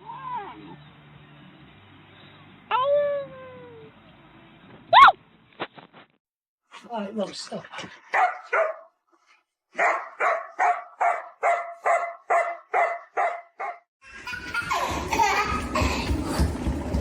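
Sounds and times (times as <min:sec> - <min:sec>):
dog barking: 0:08.1 - 0:08.9, 0:09.8 - 0:13.8.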